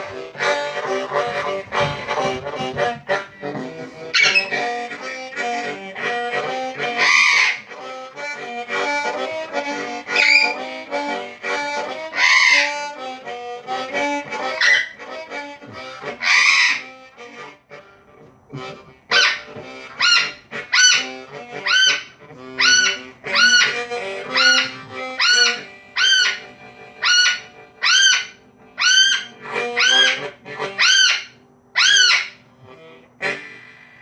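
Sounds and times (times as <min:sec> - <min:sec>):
harmonica playing slow blues: 0:00.0 - 0:34.0
parrot squawks: 0:04.1 - 0:04.7, 0:06.9 - 0:07.7, 0:10.1 - 0:10.6, 0:12.1 - 0:12.8, 0:14.4 - 0:15.0, 0:16.0 - 0:16.9, 0:19.1 - 0:32.5.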